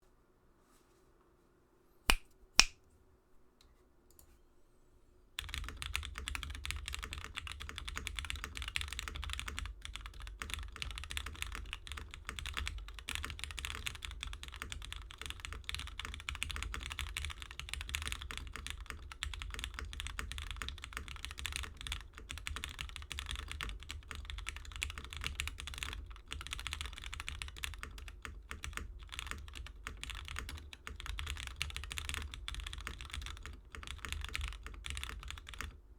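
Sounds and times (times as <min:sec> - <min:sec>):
fast typing on mechanical keyboard: 0:05.4 - 0:35.8.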